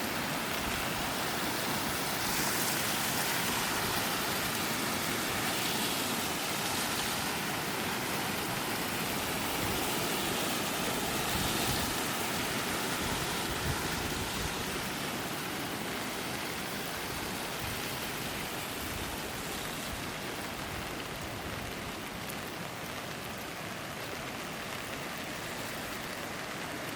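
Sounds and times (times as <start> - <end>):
flowing falling water: 0.0 - 26.9.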